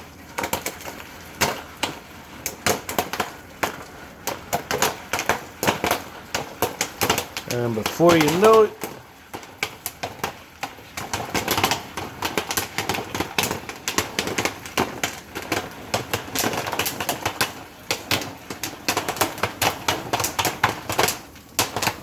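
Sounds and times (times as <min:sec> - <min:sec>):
popcorn popping in a pan: 0:00.0 - 0:22.0.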